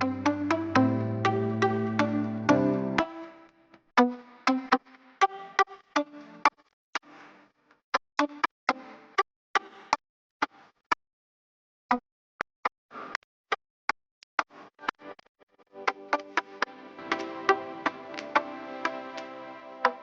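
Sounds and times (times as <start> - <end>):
sparse electronic music: 0.0 - 6.5, 15.8 - 20.0.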